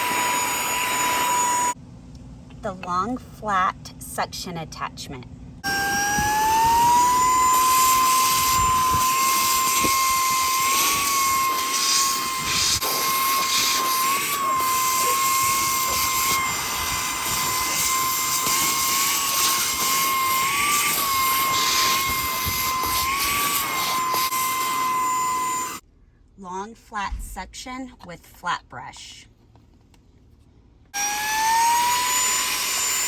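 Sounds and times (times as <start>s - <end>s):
handheld vacuum motor whine: 0.0s - 1.8s, 5.6s - 25.8s, 31.0s - 33.0s.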